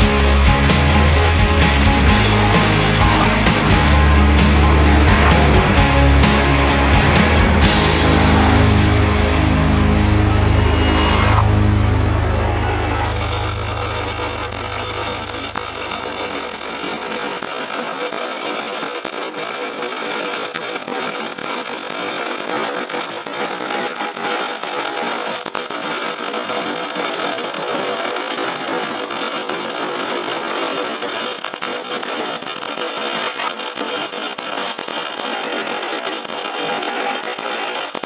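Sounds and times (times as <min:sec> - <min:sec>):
low bass tone: 0:00.0 - 0:17.0
welding arc crackling: 0:00.0 - 0:38.0.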